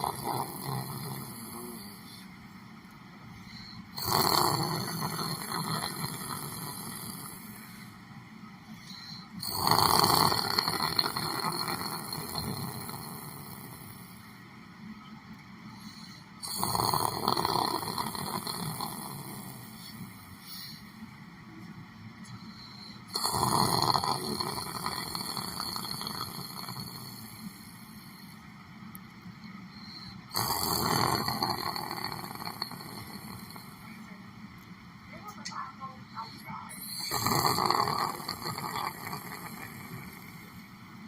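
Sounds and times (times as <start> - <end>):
person snoring: 0.0 - 2.2, 3.6 - 7.8, 8.9 - 14.2, 15.8 - 20.8, 22.6 - 28.4, 30.0 - 34.0, 36.8 - 40.7.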